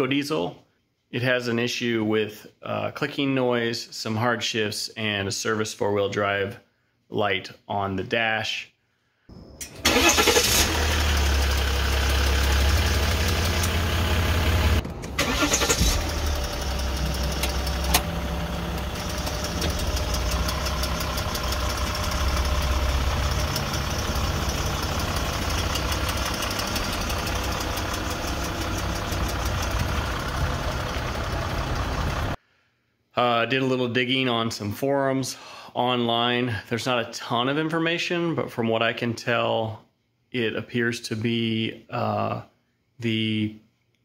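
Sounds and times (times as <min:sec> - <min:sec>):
diesel engine starting and idling: 0:09.3 - 0:32.4.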